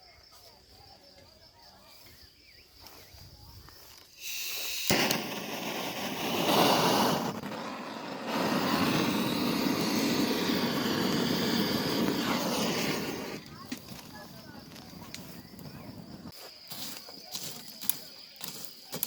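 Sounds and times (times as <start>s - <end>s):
faint insect chirping: 0.0s - 19.0s
charcoal barbecue sizzling: 4.2s - 19.0s
sharp crack: 4.8s - 15.5s.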